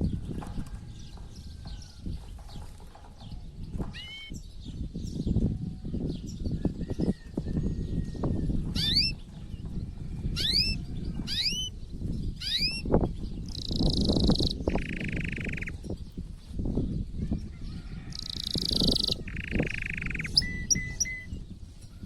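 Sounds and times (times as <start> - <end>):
canary singing: 3.7 - 4.5, 6.8 - 9.4, 10.1 - 16.0, 17.8 - 22.0.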